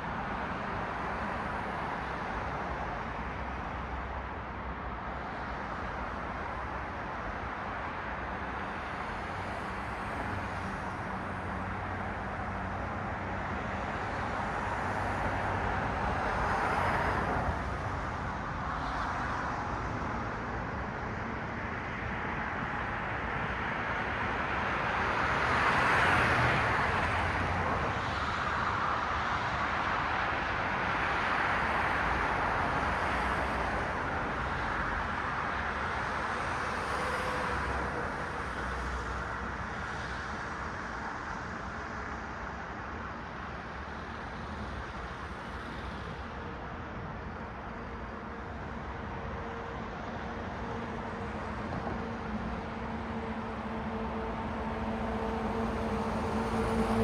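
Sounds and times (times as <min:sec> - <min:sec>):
cars passing: 0:43.7 - 0:57.0.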